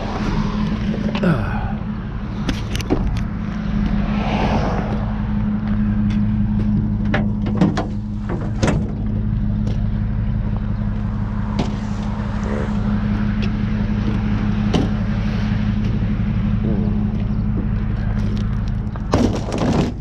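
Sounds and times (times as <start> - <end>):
engine humming: 0.0 - 20.0
sharp clicks and knocks: 2.4 - 4.0, 5.6 - 9.9.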